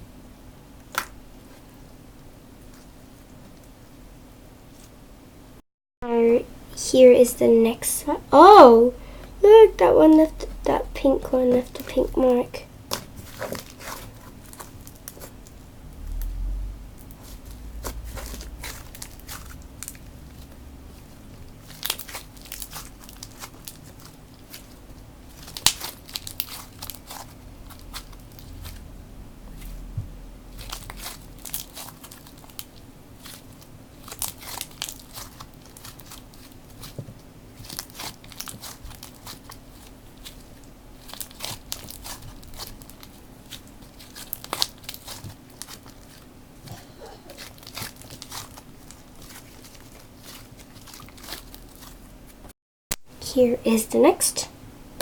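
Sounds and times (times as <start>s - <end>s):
slime crackling and popping: 9.4s - 28.8s, 30.5s - 52.1s.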